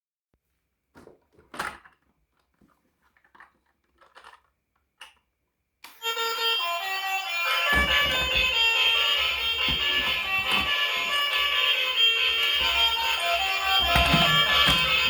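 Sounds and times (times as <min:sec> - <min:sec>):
music: 0:05.9 - 0:15.0
packaging rustles and knocks: 0:07.5 - 0:15.0.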